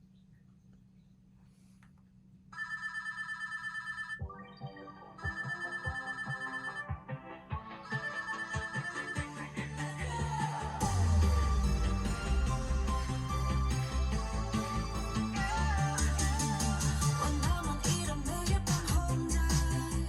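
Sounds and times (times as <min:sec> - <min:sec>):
faint hum: 0:00.0 - 0:02.6
music through speakers: 0:06.8 - 0:20.0
bass hits: 0:10.8 - 0:20.0.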